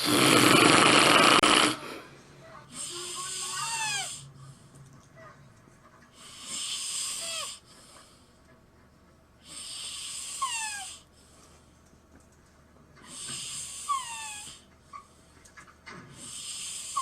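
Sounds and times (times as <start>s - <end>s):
person snoring with whistle: 0.0s - 2.0s, 2.8s - 4.3s, 6.4s - 7.6s, 9.5s - 11.0s, 13.1s - 14.6s, 16.3s - 17.0s.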